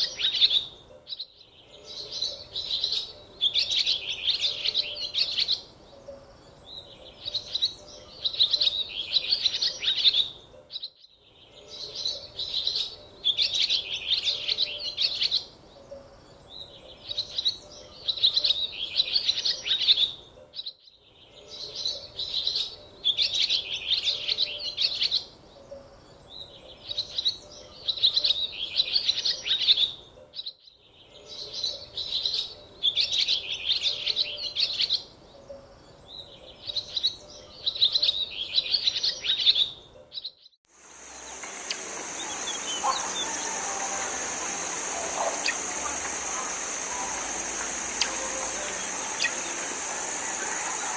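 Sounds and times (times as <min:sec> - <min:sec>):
small birds chirping: 0:40.8 - 0:50.9.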